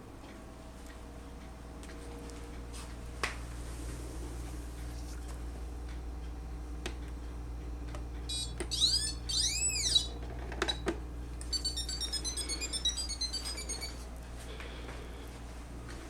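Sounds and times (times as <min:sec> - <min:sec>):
short high beeps: 0:08.3 - 0:10.1, 0:11.5 - 0:14.0
electronic whoops: 0:08.3 - 0:10.2, 0:11.5 - 0:14.0.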